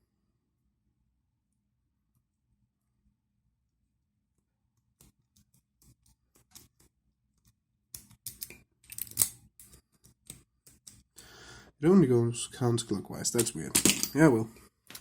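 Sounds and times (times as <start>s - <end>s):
padlock clicks and scrapes: 7.9s - 11.1s.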